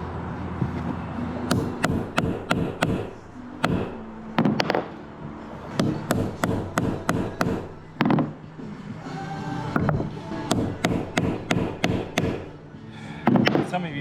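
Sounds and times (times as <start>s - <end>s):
sharp blows on hardwood: 1.5s - 5.0s, 5.7s - 8.6s, 9.8s - 13.7s.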